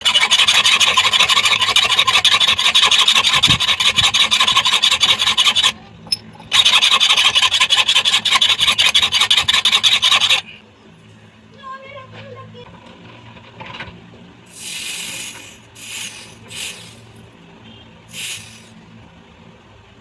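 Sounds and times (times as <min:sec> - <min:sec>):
file rasping: 0:00.0 - 0:10.6, 0:14.5 - 0:17.2.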